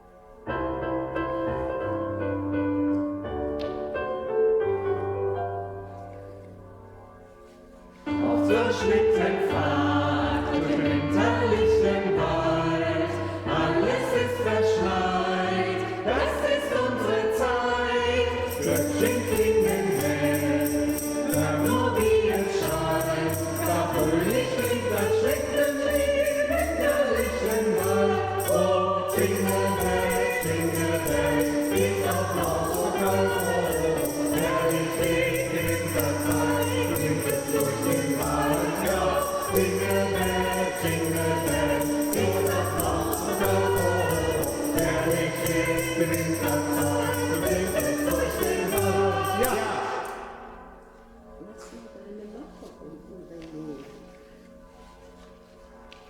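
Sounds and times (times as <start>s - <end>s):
instrumental accompaniment: 0.0s - 51.7s
choir singing in harmony: 8.0s - 51.8s
sleigh bells shaken: 8.5s - 50.3s.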